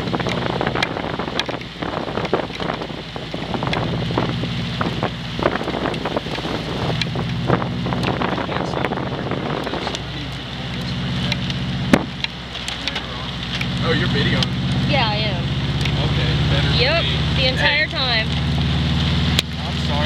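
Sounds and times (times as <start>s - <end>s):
wind noise on microphone: 0.0s - 12.3s
vehicle engine running: 0.0s - 20.0s.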